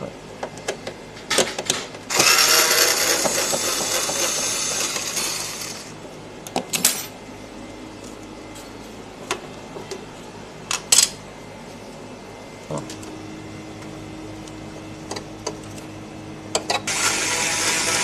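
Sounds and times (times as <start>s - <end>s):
electric screwdriver running: 2.1s - 5.9s, 16.9s - 18.0s.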